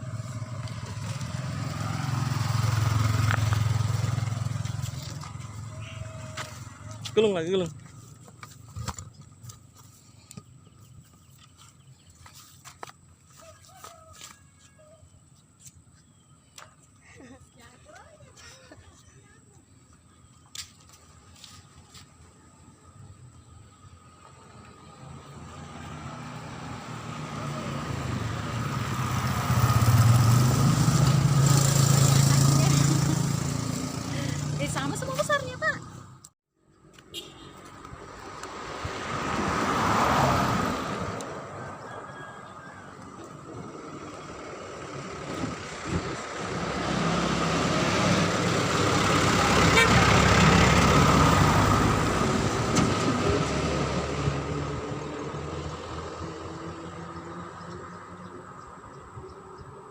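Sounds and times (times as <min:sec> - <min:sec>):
motor vehicle passing: 0:00.0 - 0:12.7, 0:21.0 - 0:59.9
motor engine running: 0:30.6 - 0:36.0.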